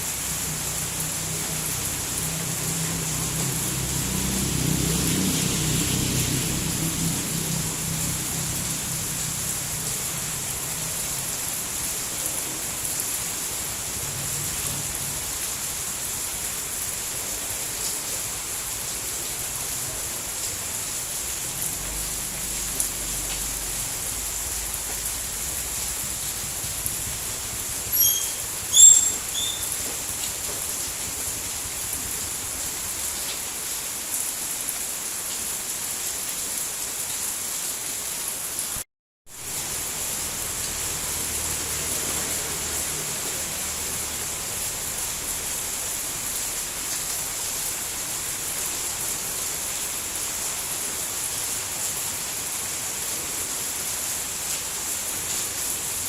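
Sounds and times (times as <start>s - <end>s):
steady rainfall: 0.0s - 56.0s
short high chirps: 27.9s - 29.8s.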